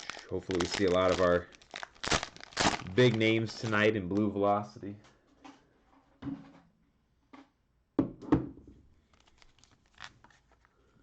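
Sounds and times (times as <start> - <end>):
plastic rustling: 0.0 - 4.4, 9.0 - 10.9
knocks and thunks on a table: 6.2 - 6.6, 8.0 - 8.7.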